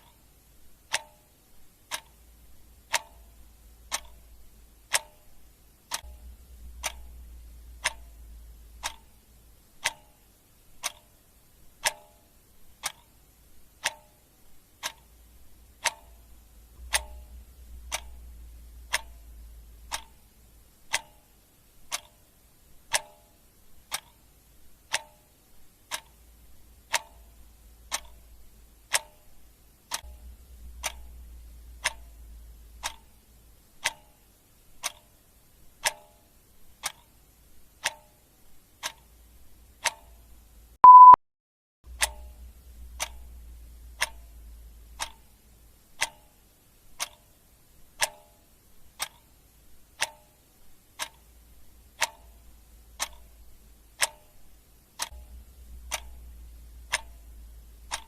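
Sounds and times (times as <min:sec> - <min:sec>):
clock ticking: 0:00.0 - 0:41.2, 0:41.9 - 0:58.0
short loud beep: 0:40.8 - 0:41.2.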